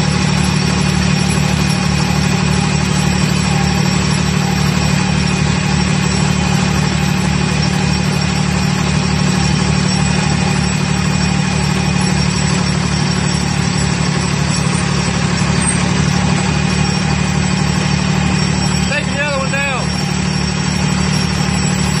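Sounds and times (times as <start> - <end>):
pile-driving hammer drone: 0.0 - 22.0.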